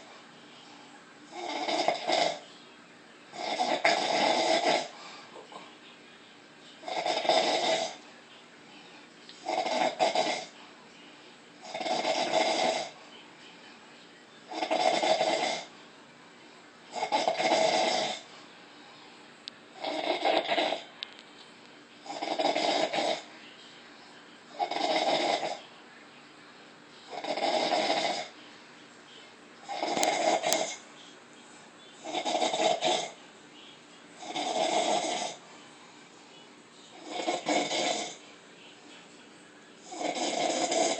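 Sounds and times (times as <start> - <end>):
woman snoring: 1.3 - 2.4, 3.4 - 5.0, 6.8 - 8.0, 9.4 - 10.6, 11.6 - 13.0, 14.5 - 15.7, 16.9 - 18.3, 19.8 - 20.9, 22.0 - 23.3, 24.5 - 25.6, 27.1 - 28.4, 29.6 - 30.8, 32.0 - 33.2, 34.2 - 35.4, 36.9 - 38.2, 39.8 - 40.9.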